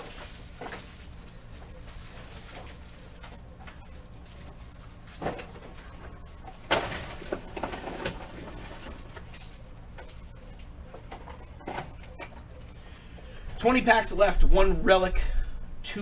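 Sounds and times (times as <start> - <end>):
foil wrapper crinkling: 0.0 - 5.2.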